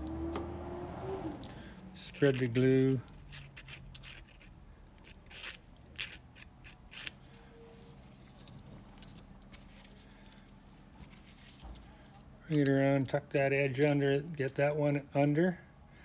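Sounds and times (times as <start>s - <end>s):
sandpaper rustling and clicking: 1.4s - 7.4s.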